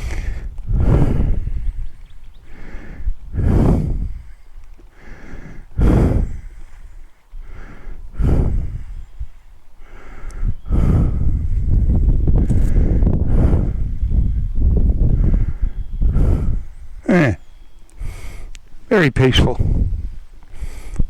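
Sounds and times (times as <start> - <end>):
air buffeting microphone: 0.0 - 4.4, 5.8 - 6.6, 8.1 - 9.0, 10.7 - 17.4, 18.0 - 20.9.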